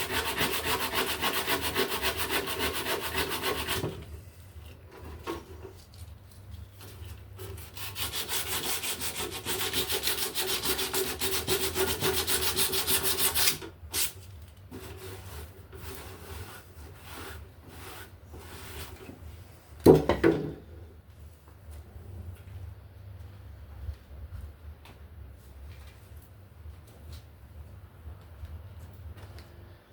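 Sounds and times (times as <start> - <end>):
hand scrubbing strokes: 14.8 - 19.0.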